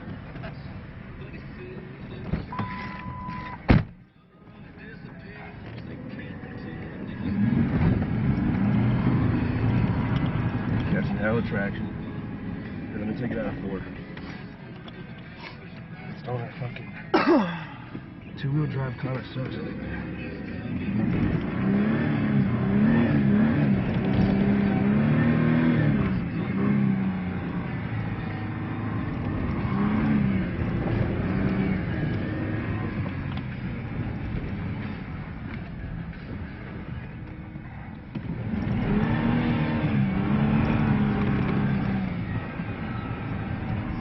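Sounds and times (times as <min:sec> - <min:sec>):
pickup engine revving: 0:06.6 - 0:14.0, 0:19.5 - 0:44.0.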